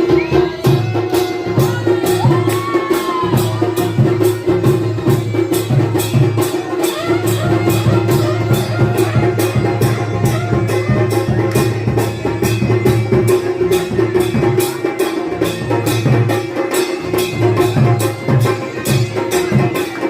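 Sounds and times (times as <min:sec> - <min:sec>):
drums beating quick rhythm: 0:00.0 - 0:20.0
bagpipe playing a tune: 0:06.6 - 0:11.9.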